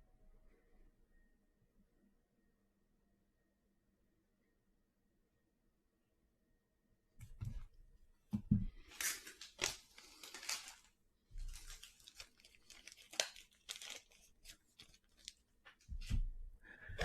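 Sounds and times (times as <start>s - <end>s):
cards rustling and clicking: 8.8s - 16.1s
wrapper tearing and crinkling: 8.9s - 15.5s.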